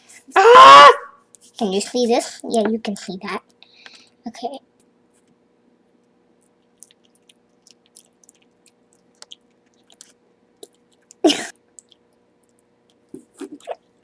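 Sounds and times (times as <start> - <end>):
child licking and sucking candy: 6.5 - 13.9.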